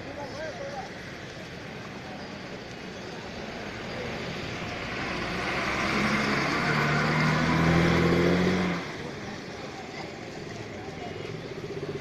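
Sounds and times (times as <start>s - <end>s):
vehicle engine approaching: 3.4s - 12.0s
vehicle passing by: 4.0s - 9.4s.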